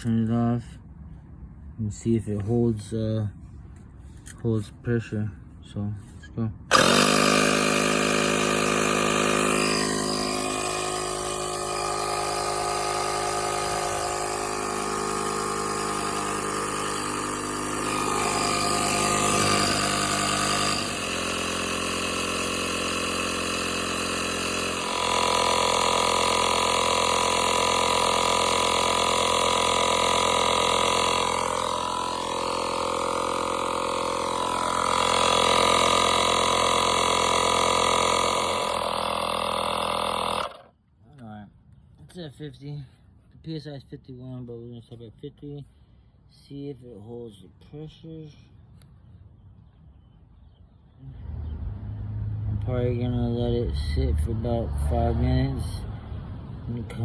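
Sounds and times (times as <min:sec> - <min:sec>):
air compressor running: 0:06.7 - 0:40.7.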